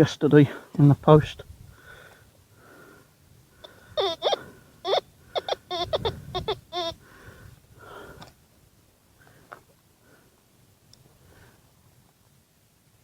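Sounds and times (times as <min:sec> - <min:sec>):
metal detector warbling tones: 0:04.0 - 0:06.9.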